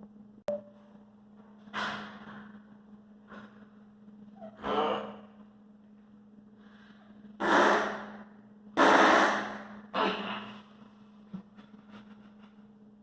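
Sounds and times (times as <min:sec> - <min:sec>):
man making fake fart noises: 0:07.4 - 0:08.1, 0:08.8 - 0:10.6.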